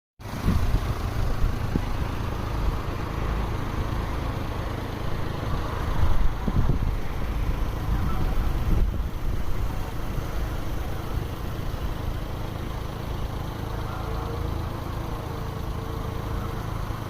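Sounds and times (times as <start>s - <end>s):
strong wind buffeting microphone: 0.3s - 2.2s, 5.6s - 10.3s.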